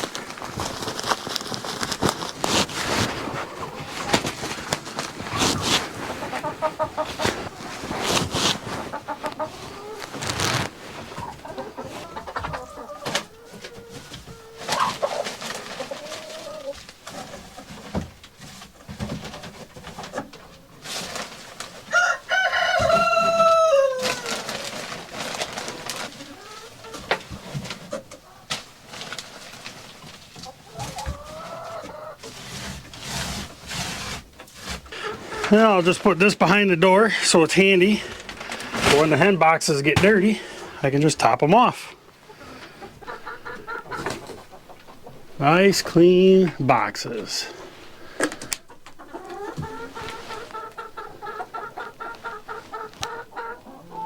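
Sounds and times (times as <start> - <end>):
rustling and knocking of wood shavings: 0.0 - 41.8, 42.6 - 53.8
hens clucking: 0.0 - 54.0
rooster crowing: 21.9 - 24.3.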